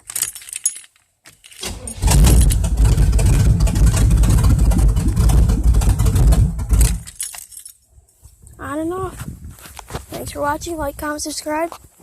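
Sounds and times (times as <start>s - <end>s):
car engine starting and running: 1.6s - 7.2s.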